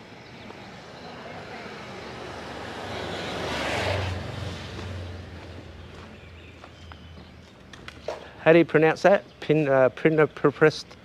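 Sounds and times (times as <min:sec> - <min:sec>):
low engine hum: 0:00.4 - 0:07.7
vehicle passing by: 0:00.6 - 0:07.3.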